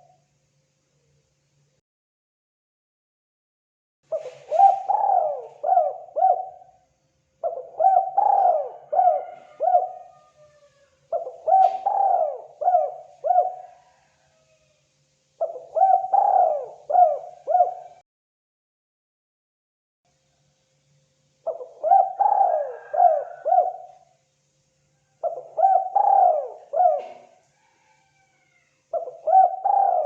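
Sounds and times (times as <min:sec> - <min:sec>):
dove cooing: 0:04.1 - 0:06.8, 0:07.4 - 0:14.6, 0:15.4 - 0:18.0, 0:21.4 - 0:24.1, 0:25.1 - 0:30.0.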